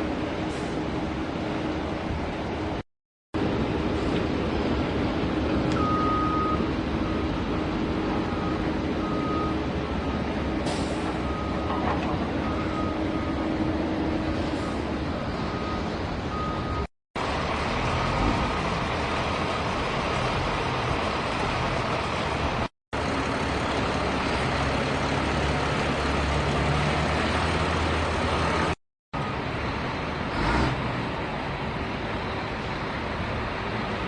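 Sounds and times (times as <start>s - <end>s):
heavy machine engine running: 3.4s - 34.0s.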